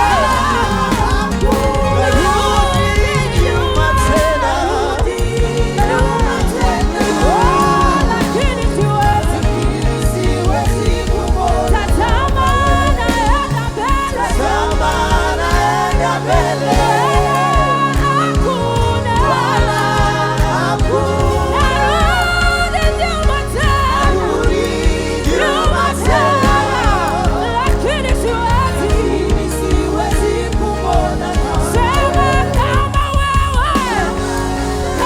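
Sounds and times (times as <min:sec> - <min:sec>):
bass and keyboard chords: 0:00.0 - 0:35.0
gospel singers and choir: 0:00.0 - 0:35.0.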